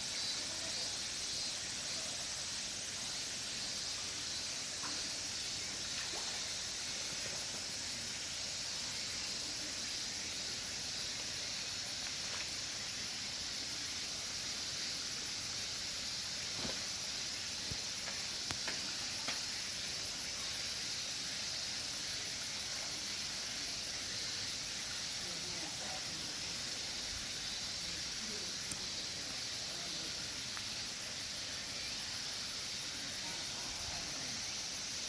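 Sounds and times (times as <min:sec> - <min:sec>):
constant hiss: 0:00.0 - 0:35.0
insects chirring: 0:00.0 - 0:35.0
faint clicks: 0:17.6 - 0:19.4.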